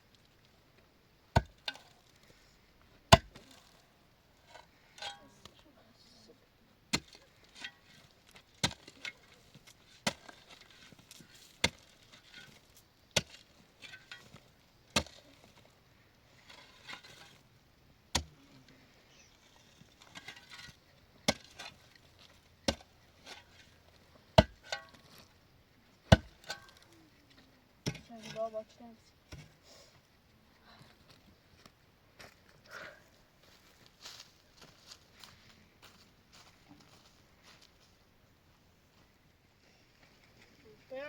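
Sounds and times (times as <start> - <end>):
blade chopping wood: 3.1 - 3.6, 24.4 - 24.9, 26.1 - 26.8.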